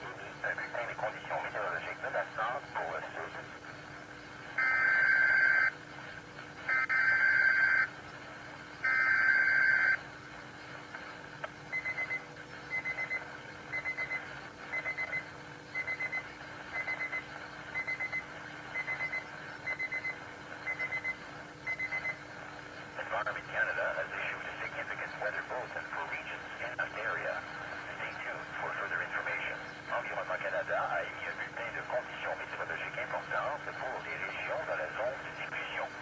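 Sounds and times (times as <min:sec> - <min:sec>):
weather radio alarm beeping: 0:04.6 - 0:05.7, 0:06.6 - 0:08.0, 0:08.8 - 0:10.0, 0:11.7 - 0:22.2.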